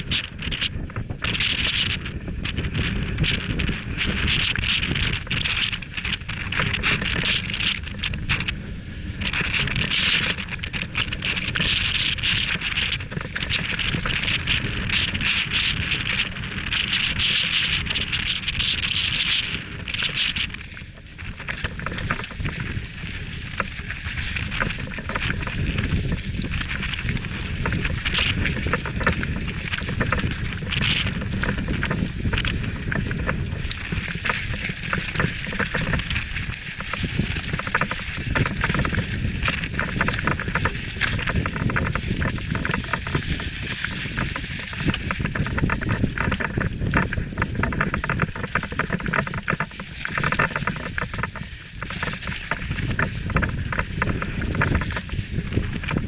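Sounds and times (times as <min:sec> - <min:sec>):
bike rattling: 0:00.0 - 0:56.0
wind buffeting microphone: 0:00.0 - 0:56.0
stones clattering under bike tyres: 0:21.2 - 0:56.0.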